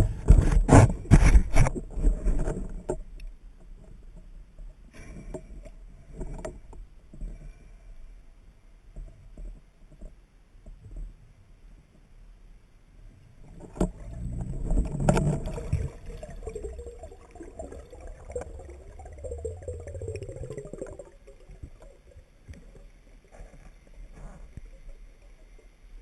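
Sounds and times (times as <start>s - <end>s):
faint ticks: 2.9s - 7.6s, 19.8s - 26.0s
low underwater rumble: 13.3s - 26.0s
sharp knocks underwater: 13.5s - 22.8s
gurgling bubbles: 13.9s - 23.5s.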